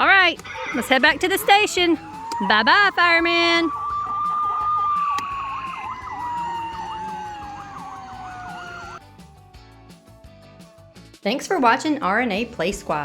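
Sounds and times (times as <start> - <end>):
fire truck siren wailing: 1.7 - 9.0.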